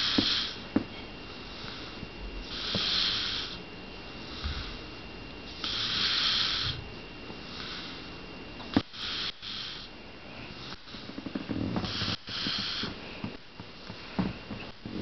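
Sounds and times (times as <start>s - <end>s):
person snoring: 1.6s - 3.6s, 5.6s - 6.8s, 8.9s - 9.9s.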